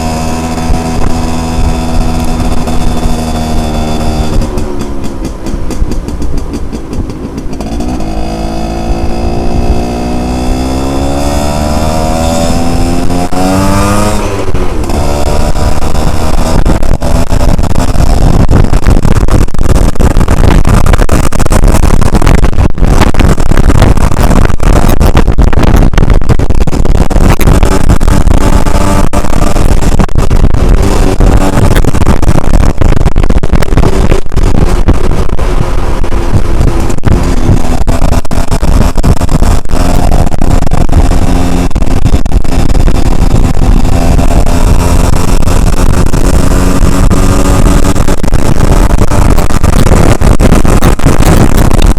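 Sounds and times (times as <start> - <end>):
motorcycle engine accelerating: 0.0 - 51.9
wind buffeting on microphone: 0.0 - 51.9.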